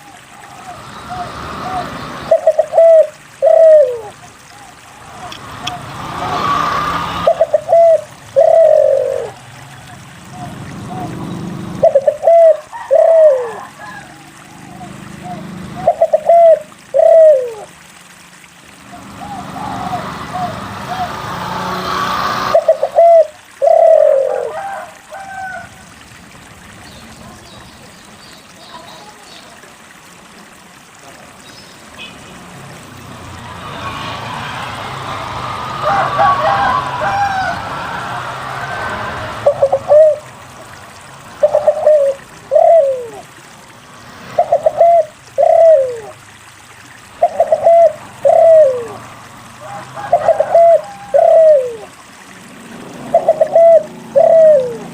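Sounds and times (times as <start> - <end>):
dove cooing: 0.0 - 5.9, 7.2 - 9.4, 10.3 - 17.8, 22.5 - 25.7, 39.4 - 40.4, 41.3 - 43.3, 44.4 - 46.2, 47.2 - 49.0, 49.6 - 52.0, 53.1 - 54.9
loud rushing noise: 33.4 - 40.6.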